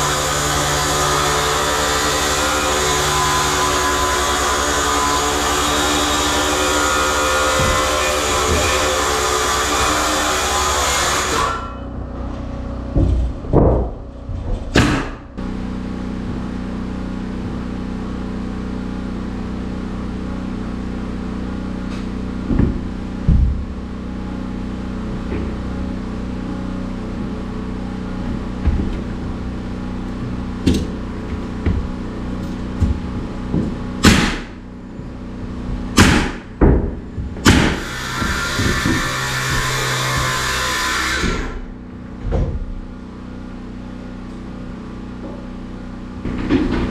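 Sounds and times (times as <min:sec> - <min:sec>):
low machine hum: 0:00.0 - 0:46.9
carpentry knocks and bangs: 0:00.4 - 0:11.6, 0:12.9 - 0:15.4, 0:22.4 - 0:23.8, 0:28.2 - 0:34.6, 0:35.6 - 0:42.8, 0:46.2 - 0:46.9.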